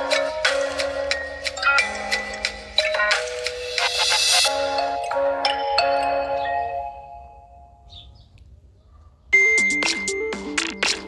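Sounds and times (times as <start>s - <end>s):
mobile phone ringtone: 0.0s - 7.8s.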